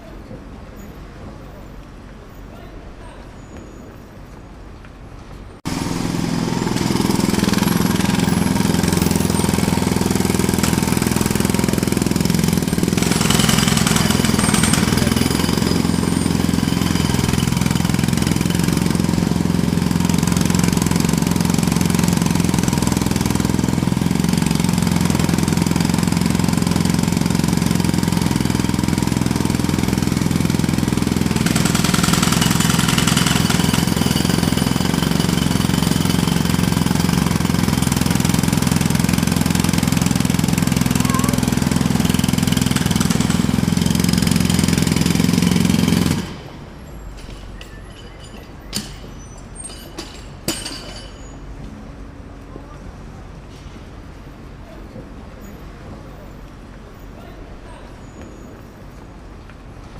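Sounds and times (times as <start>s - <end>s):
jackhammer hammering: 5.6s - 51.4s.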